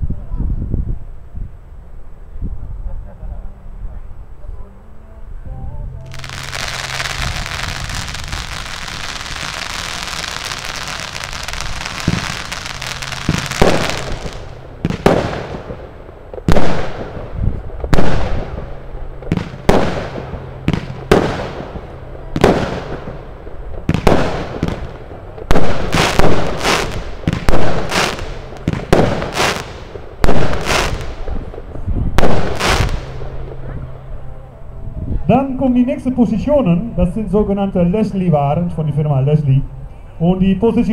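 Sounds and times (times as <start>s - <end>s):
firework bangs with hiss: 6.1s - 23.2s, 23.8s - 33.4s
firework crackling: 6.1s - 33.6s.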